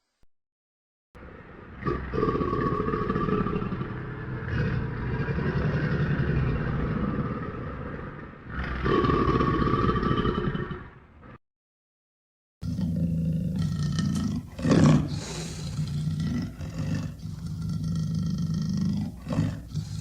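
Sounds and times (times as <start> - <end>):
creature rasping growl: 12.6 - 20.0.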